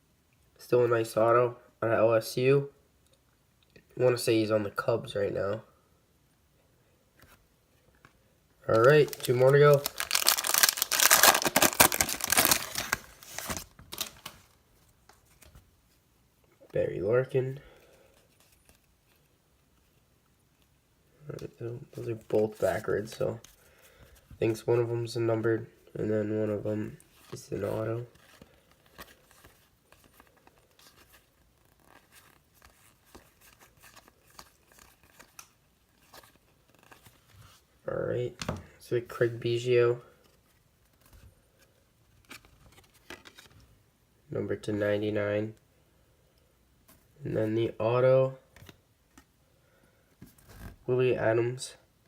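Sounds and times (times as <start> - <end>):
plastic wrapper tearing and crinkling: 8.7 - 14.6.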